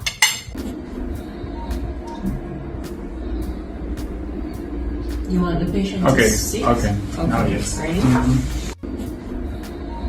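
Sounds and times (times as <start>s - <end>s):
music with a beat: 0.0s - 5.4s, 7.4s - 10.0s
jet cabin rumble: 0.7s - 8.8s.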